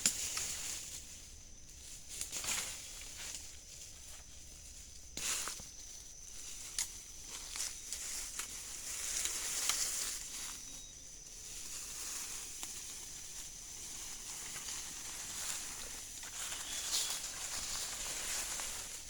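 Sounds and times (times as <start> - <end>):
insects chirring: 0.0 - 19.0
leaves or twigs crackling: 0.0 - 19.0.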